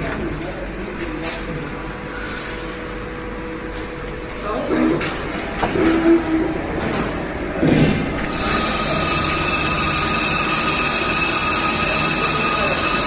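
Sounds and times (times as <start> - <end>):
lathe mechanical whine: 8.2 - 13.0.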